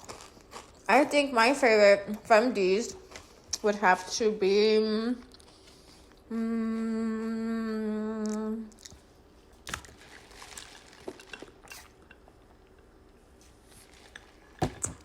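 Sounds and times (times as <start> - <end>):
woman humming: 6.3 - 8.7
mouth and handling noises: 8.2 - 15.0.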